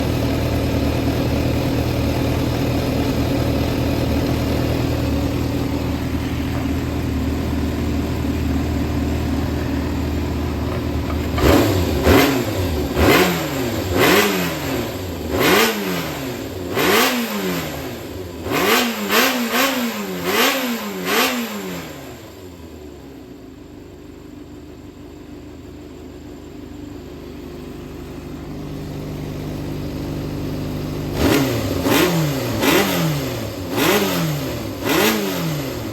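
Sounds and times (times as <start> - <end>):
motorcycle engine idling and revving: 0.0 - 35.9.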